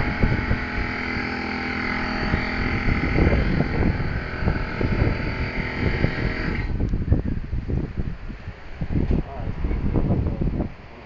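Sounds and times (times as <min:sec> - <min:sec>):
motor-driven machine humming: 0:00.0 - 0:07.5
wind buffeting microphone: 0:00.0 - 0:11.0.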